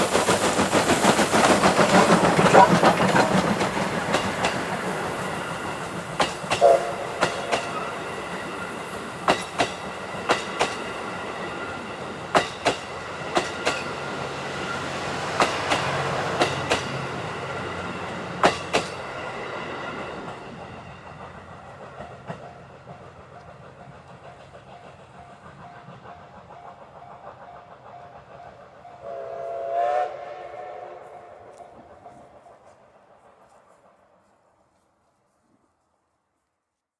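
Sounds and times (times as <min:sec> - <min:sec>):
train wheels clicking on rail joints: 0:00.0 - 0:30.0
steam locomotive whistle: 0:04.8 - 0:09.0, 0:28.0 - 0:32.0.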